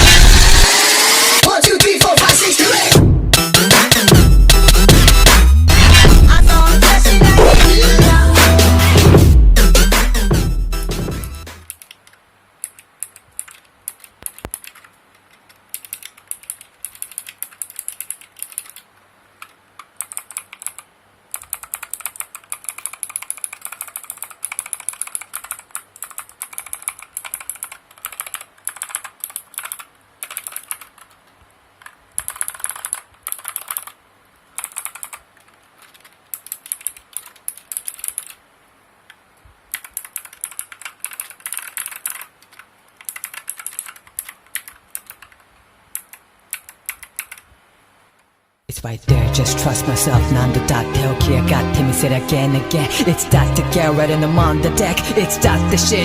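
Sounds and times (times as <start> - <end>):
clicky mechanical keyboard typing: 11.6 - 38.4, 39.7 - 47.5.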